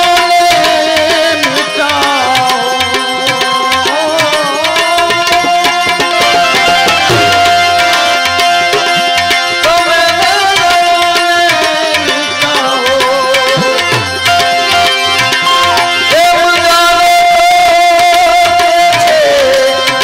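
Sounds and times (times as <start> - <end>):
long-held melody line: 0.0 - 20.0
tabla playing fast rhythm: 0.0 - 20.0.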